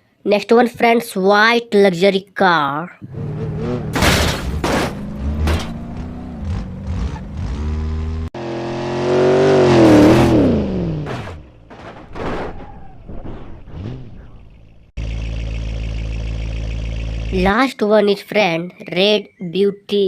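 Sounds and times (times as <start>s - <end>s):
engine revving: 3.0s - 12.5s, 13.1s - 17.6s
car engine running: 3.1s - 12.0s, 13.5s - 17.6s.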